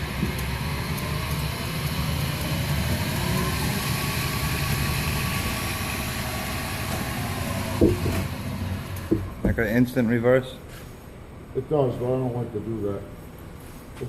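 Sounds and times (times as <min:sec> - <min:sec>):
lathe motor humming: 0:00.0 - 0:09.5.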